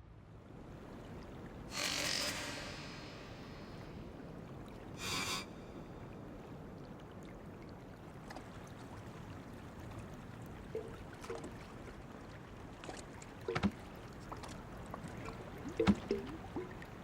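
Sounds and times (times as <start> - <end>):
water lapping against boat: 6.8 - 17.0.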